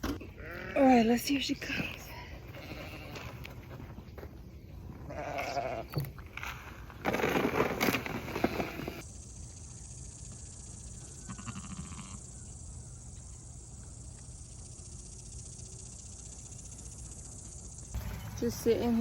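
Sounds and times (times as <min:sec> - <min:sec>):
crickets chirping: 0:07.1 - 0:19.0.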